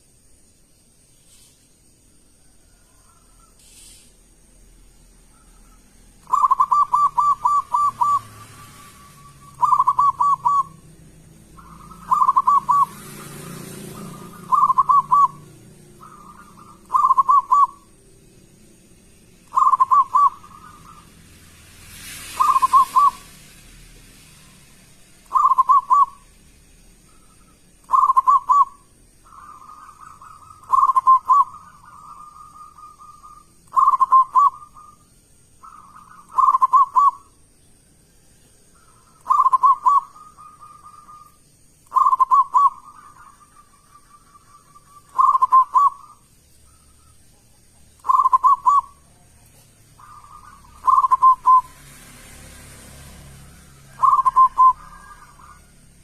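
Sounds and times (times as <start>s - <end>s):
dove cooing: 5.3s - 18.8s, 19.4s - 21.2s, 22.4s - 23.4s, 25.2s - 26.4s, 27.1s - 35.0s, 35.6s - 37.4s, 38.7s - 51.8s, 53.6s - 56.0s.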